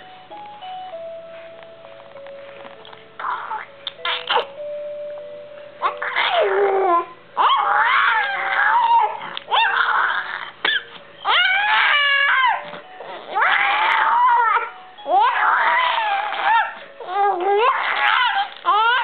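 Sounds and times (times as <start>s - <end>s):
baby crying out: 3.2s - 4.5s, 5.8s - 19.0s.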